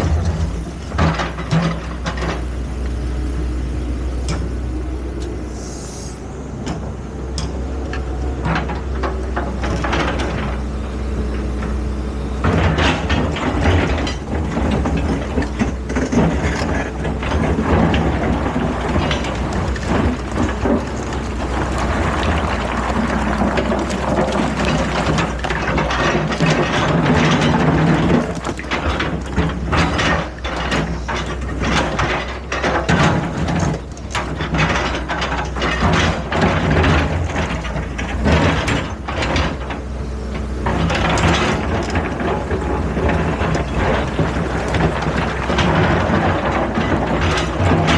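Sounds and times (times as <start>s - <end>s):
metal clanks and scraping: 0.0s - 2.5s, 12.4s - 47.9s
excavator engine running: 0.0s - 47.9s.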